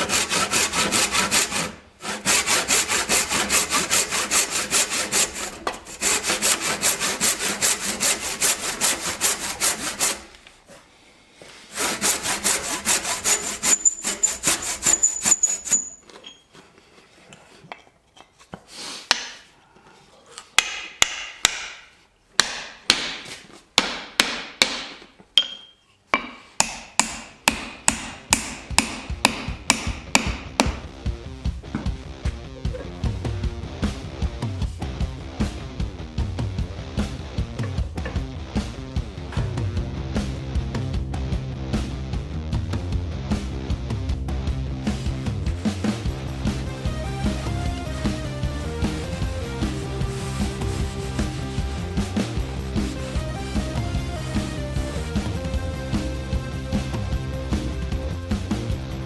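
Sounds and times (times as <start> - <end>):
hand tool strokes on wood: 0.0 - 17.8, 45.6 - 57.2.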